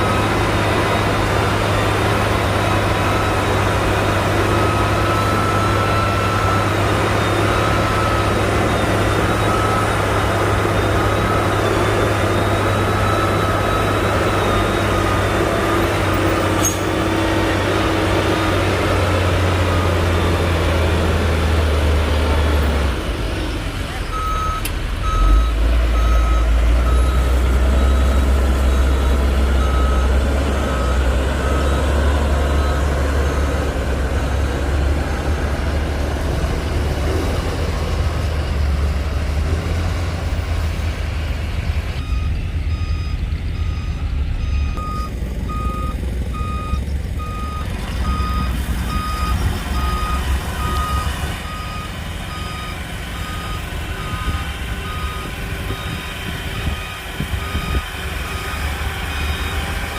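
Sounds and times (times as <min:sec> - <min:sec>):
reversing alarm beeping: 0:00.0 - 0:22.4, 0:24.1 - 0:38.8, 0:42.0 - 0:59.9
diesel engine rumble: 0:00.0 - 0:59.9.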